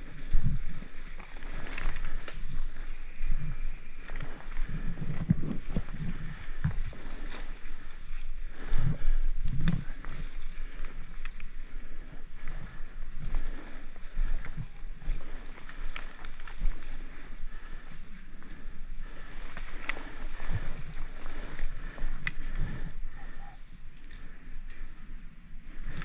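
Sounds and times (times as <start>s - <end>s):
wind noise: 0.0s - 26.0s.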